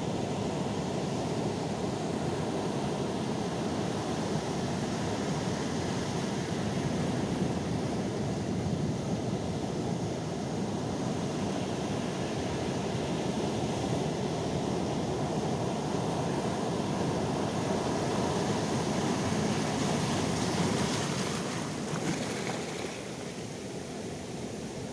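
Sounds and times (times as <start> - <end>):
sea waves washing onto shore: 14.8 - 24.9.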